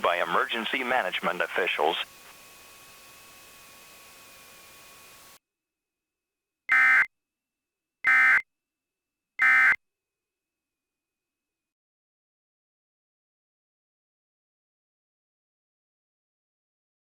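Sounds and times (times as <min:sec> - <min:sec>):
digital data tone bursts: 0:00.0 - 0:02.1.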